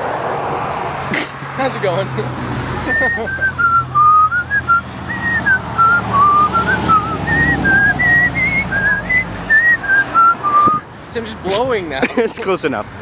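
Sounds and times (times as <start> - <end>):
woman whistling a tune: 3.0 - 10.8.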